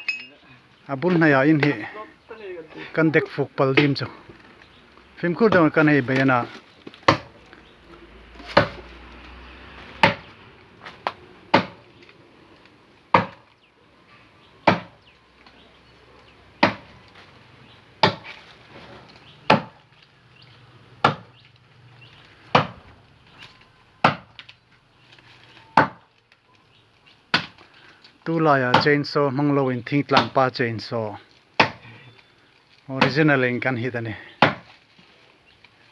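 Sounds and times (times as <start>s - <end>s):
axe chopping tree trunk: 7.0s - 7.4s, 8.4s - 8.9s, 9.9s - 11.8s, 13.1s - 13.5s, 14.6s - 15.0s, 16.6s - 17.0s, 18.0s - 18.4s, 19.4s - 19.8s, 21.0s - 21.4s, 22.5s - 22.9s, 24.0s - 24.4s, 25.8s - 26.1s, 27.3s - 27.6s, 30.2s - 30.4s, 31.6s - 31.8s, 34.3s - 34.7s.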